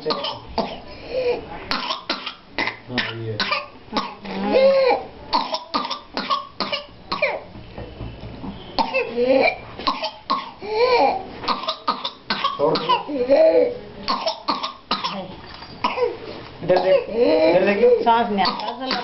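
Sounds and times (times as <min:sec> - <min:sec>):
person coughing in rapid fits: 0:00.0 - 0:00.9, 0:08.8 - 0:13.1, 0:16.7 - 0:17.6, 0:18.4 - 0:19.0.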